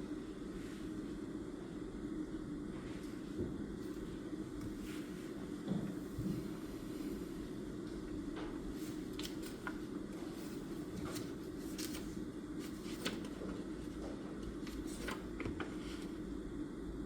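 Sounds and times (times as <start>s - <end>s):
low room hum: 0.0s - 17.0s
pen clicks and paper rustles: 8.9s - 9.9s, 10.9s - 14.0s, 14.6s - 16.1s.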